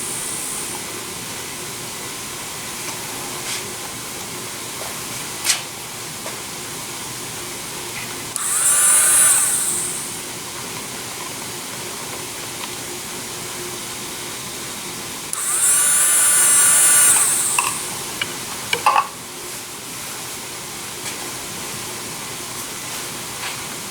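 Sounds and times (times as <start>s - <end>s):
dental drill whine: 0.0s - 1.2s, 8.3s - 10.7s, 13.7s - 19.1s
steady hiss: 0.0s - 1.4s
sharp clicks: 15.3s - 18.8s.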